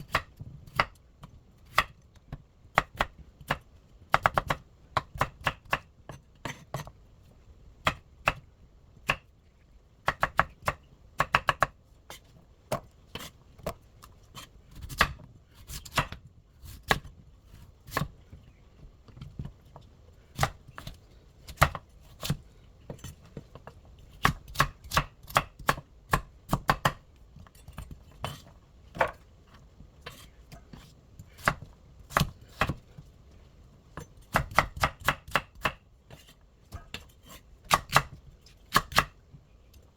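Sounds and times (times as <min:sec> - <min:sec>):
knife chopping on cutting board: 0:02.7 - 0:06.9, 0:10.0 - 0:11.7, 0:14.4 - 0:17.1, 0:17.8 - 0:18.1, 0:20.4 - 0:22.4, 0:24.2 - 0:27.0, 0:34.3 - 0:39.1.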